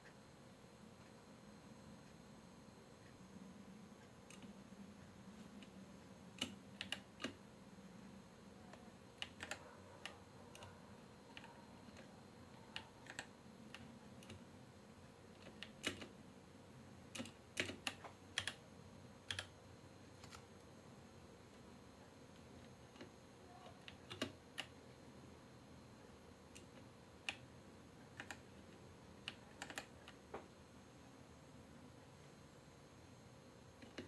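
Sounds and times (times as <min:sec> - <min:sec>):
mechanical keyboard key clicks: 0:29.2 - 0:30.2.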